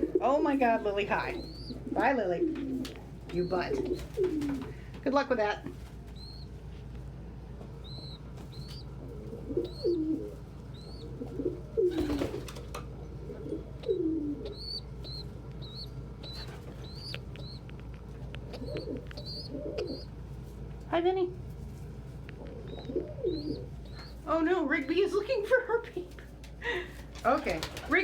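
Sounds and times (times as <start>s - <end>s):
pigeons cooing: 0.0s - 4.9s, 7.8s - 20.2s, 22.2s - 25.3s
wing flapping: 0.0s - 5.1s, 7.8s - 20.4s, 26.9s - 28.0s
young pigeons peeping: 0.0s - 28.0s.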